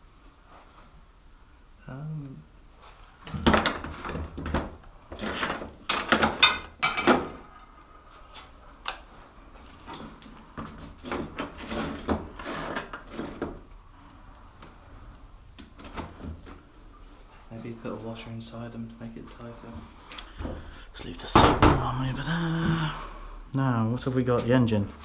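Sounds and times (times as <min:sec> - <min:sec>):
metal tools clattering on workbench: 0:03.3 - 0:07.6, 0:09.8 - 0:13.7.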